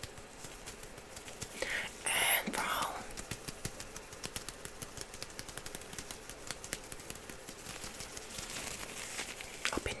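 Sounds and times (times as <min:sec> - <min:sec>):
light taps and clicks: 0:02.7 - 0:08.5.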